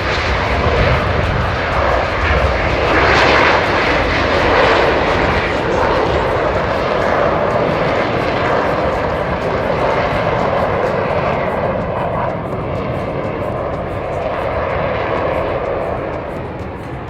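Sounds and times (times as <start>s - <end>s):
jet engines at takeoff: 0.0s - 17.0s.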